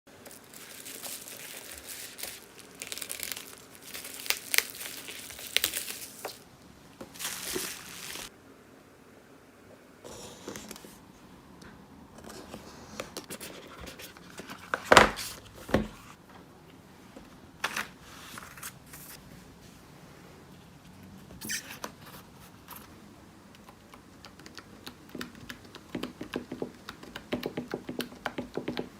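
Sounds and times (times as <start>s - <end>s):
packaging crinkling and rustling: 0.1s - 6.5s, 7.1s - 8.3s.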